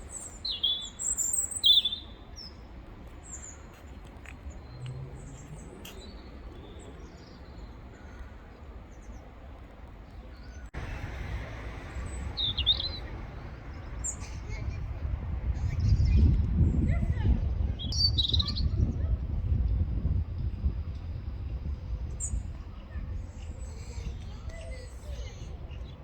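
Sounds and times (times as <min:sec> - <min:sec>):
robin chirping: 0:00.0 - 0:02.6, 0:11.9 - 0:14.6, 0:17.8 - 0:18.7.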